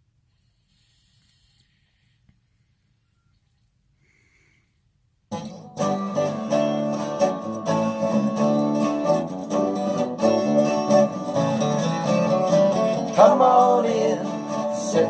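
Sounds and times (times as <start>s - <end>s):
acoustic guitar and banjo country music: 5.3s - 15.0s.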